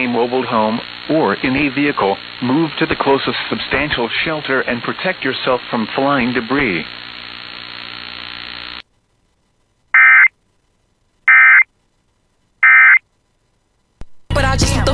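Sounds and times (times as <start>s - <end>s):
faint hum: 0.0s - 14.9s
short digital data bursts: 9.9s - 10.3s, 11.3s - 11.7s, 12.6s - 13.0s.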